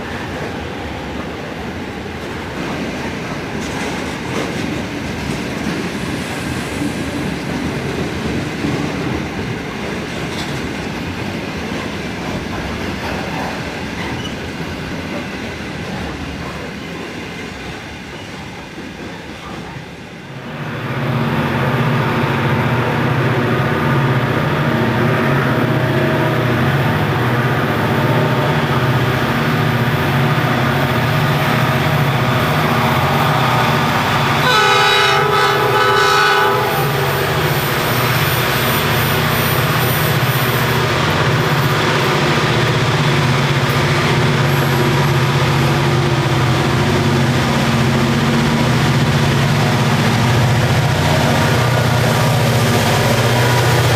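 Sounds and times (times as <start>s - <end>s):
diesel locomotive engines: 0.0s - 53.9s
locomotive horn: 27.7s - 29.0s, 32.1s - 37.6s.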